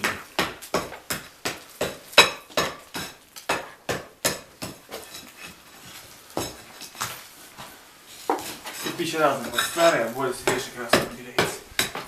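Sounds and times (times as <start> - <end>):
hammer chipping brick wall: 0.0 - 5.6, 8.3 - 12.0.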